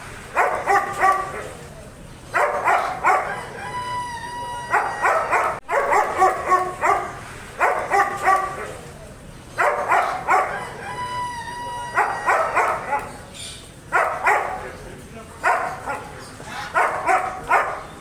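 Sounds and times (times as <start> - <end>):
dog barking: 0.3 - 1.6, 2.3 - 3.6, 4.6 - 8.9, 9.6 - 10.9, 11.8 - 13.3, 13.9 - 14.8, 15.4 - 18.0
dog whining: 2.3 - 8.9, 9.5 - 14.5.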